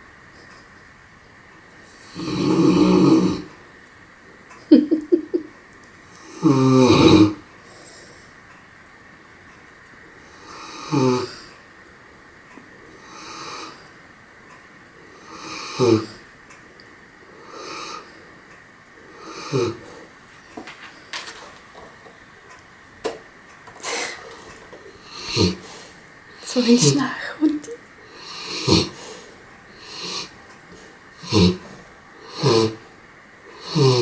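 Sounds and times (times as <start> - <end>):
dog snoring: 1.8 - 3.6, 6.2 - 7.5, 10.2 - 11.5, 12.9 - 13.9, 15.0 - 16.2, 17.3 - 18.2, 19.0 - 20.1, 23.8 - 27.0, 28.0 - 34.0.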